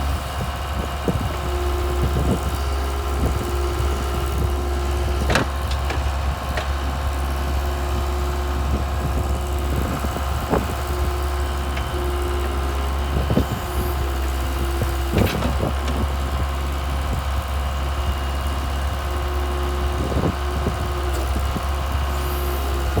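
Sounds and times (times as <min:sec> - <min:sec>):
diesel engine idling: 0:00.0 - 0:23.0
short engine knocks: 0:01.1 - 0:07.6, 0:14.8 - 0:16.5.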